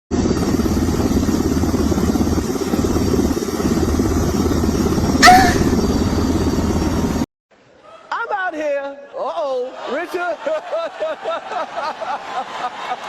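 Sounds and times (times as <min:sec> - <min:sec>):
high-pitched squeal: 0:05.2 - 0:06.2.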